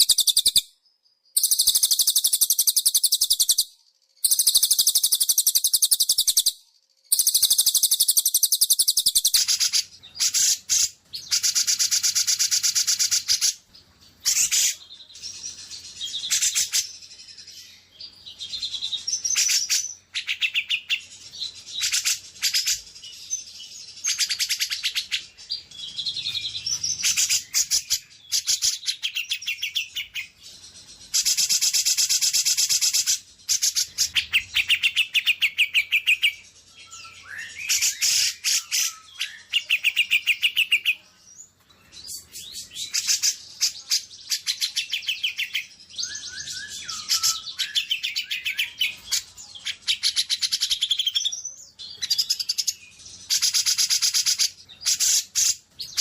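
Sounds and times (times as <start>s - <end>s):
songbirds singing in trills: 0.0s - 56.0s.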